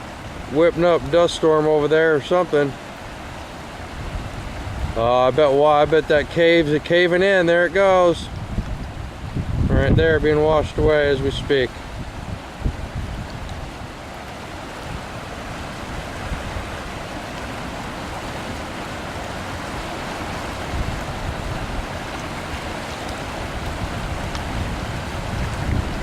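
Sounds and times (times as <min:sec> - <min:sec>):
floodwater rushing: 0:00.0 - 0:26.0.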